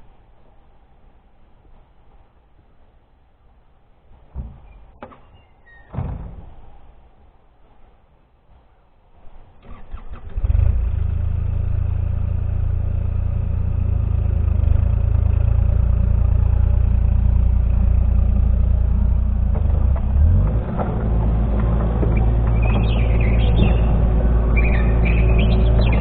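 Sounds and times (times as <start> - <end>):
excavator diesel engine: 9.6 - 26.0.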